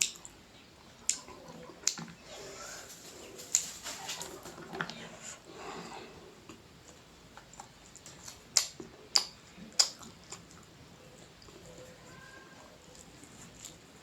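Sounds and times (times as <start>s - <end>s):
eating sounds: 0.0s - 14.0s.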